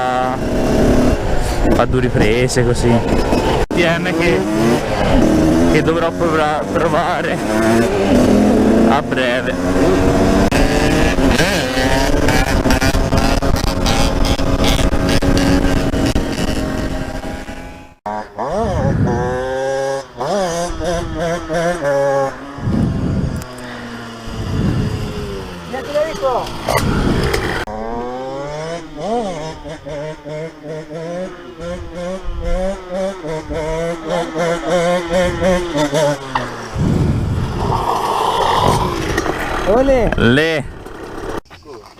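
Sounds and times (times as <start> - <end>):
motorcycle engine running: 0.0 - 37.8, 38.8 - 41.4
wind buffeting microphone: 18.5 - 30.7, 31.3 - 41.0.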